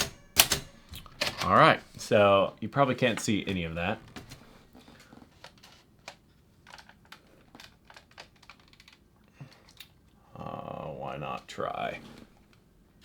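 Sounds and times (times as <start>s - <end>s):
typewriter keys clicking: 0.0s - 2.3s, 5.5s - 9.8s.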